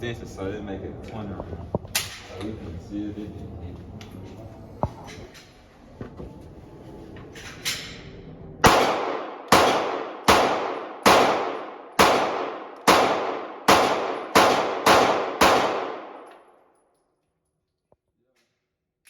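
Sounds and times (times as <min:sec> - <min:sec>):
pistol shots echoing: 0:08.6 - 0:16.5.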